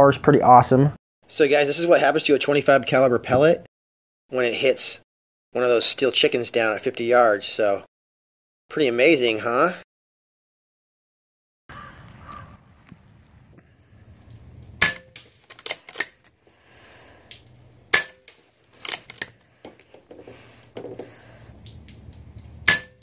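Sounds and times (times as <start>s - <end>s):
small clicks: 13.9s - 22.7s
air rifle shots: 14.8s - 15.3s.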